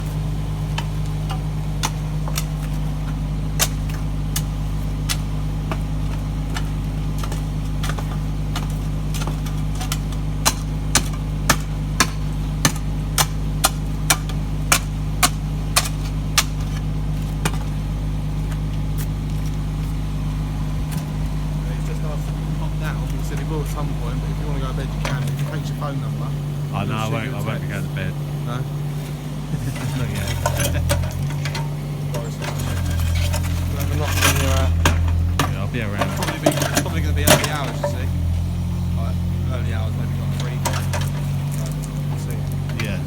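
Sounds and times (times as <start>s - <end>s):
engine running: 0.0s - 43.0s.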